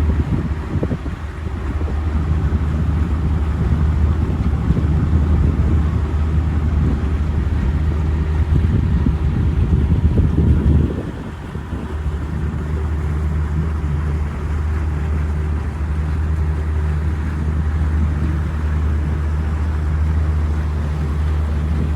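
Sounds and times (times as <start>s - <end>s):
boat motor humming: 0.0s - 21.9s.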